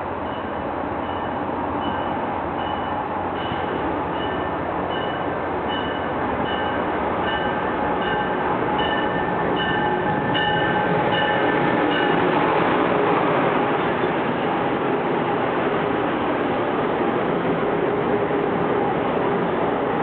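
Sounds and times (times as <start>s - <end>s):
train wheels rumbling on rail: 0.0s - 20.0s
train bell ringing: 0.2s - 12.3s.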